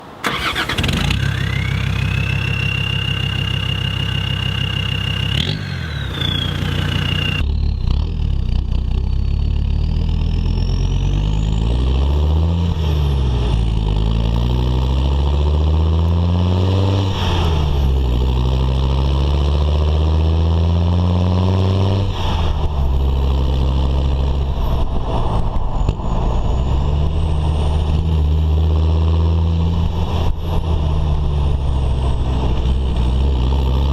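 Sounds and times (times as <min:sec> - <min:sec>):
diesel engine idling and revving: 0:00.2 - 0:33.9
high steady whine: 0:01.4 - 0:07.8.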